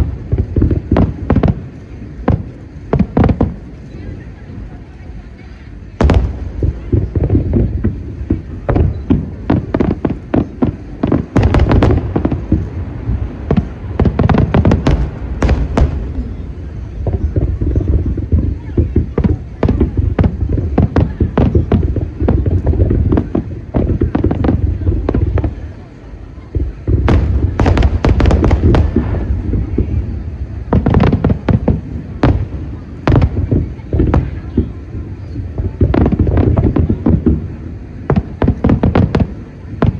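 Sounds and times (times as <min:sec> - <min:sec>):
fireworks booms and cracks: 0:00.0 - 0:39.9
low rumble: 0:06.0 - 0:25.7, 0:26.6 - 0:35.0.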